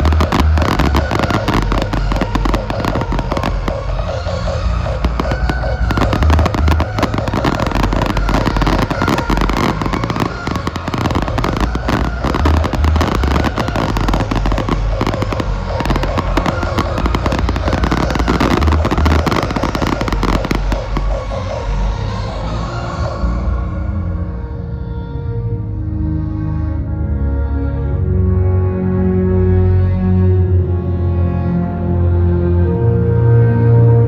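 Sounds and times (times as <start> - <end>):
deep fireworks booms: 0.0 - 21.6
fireworks crackling and popping: 0.0 - 21.6.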